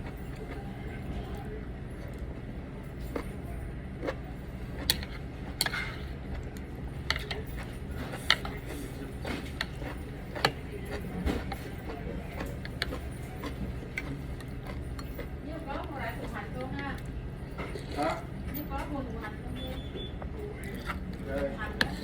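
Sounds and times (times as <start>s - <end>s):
low background hum: 0.0s - 22.0s
utensils clinking against bowl: 7.0s - 22.0s.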